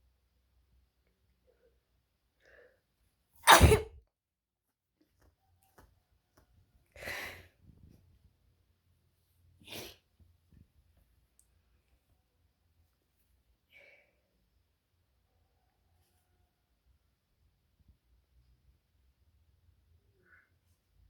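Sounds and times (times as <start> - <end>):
loud sneeze: 3.4 - 4.0.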